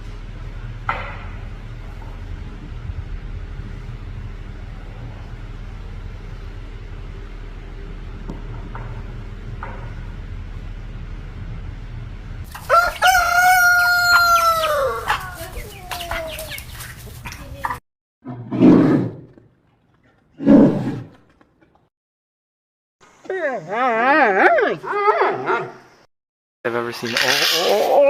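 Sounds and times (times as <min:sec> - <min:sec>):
low steady hum: 0:00.0 - 0:17.6.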